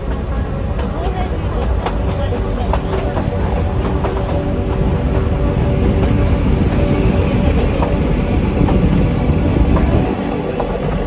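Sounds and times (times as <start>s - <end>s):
train wheels rumbling: 0.0s - 11.0s.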